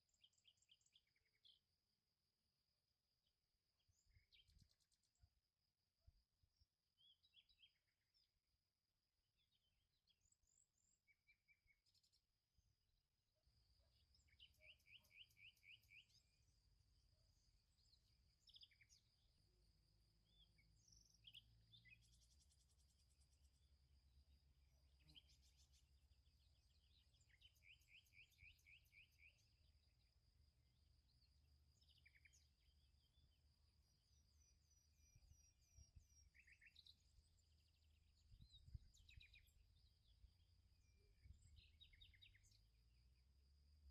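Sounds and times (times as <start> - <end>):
bird chirps and trills: 14.0 - 16.6, 25.0 - 29.7.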